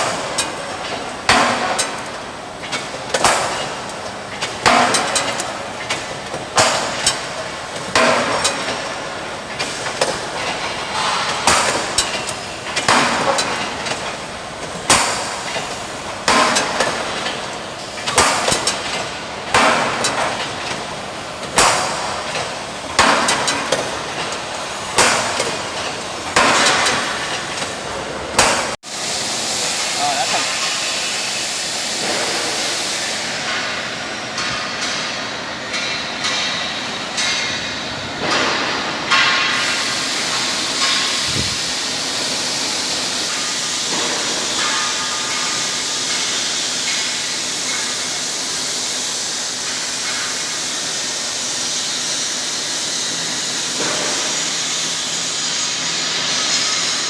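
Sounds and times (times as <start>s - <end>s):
metal punch clanking: 0.0s - 28.8s
steady machine noise: 0.0s - 57.0s.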